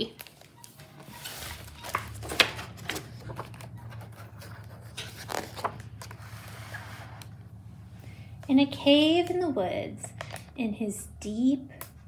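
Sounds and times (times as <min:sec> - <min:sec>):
low steady hum: 0:00.0 - 0:12.0
book pages turning: 0:00.2 - 0:07.4.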